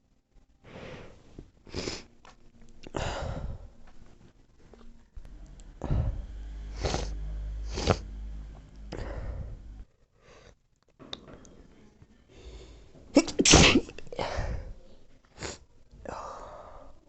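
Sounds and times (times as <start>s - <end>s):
person sneezing: 13.2s - 14.7s.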